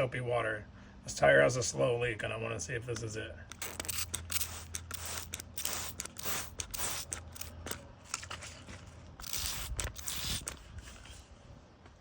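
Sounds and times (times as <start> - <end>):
scratchy hissing noises: 3.6 - 7.8, 9.2 - 10.6.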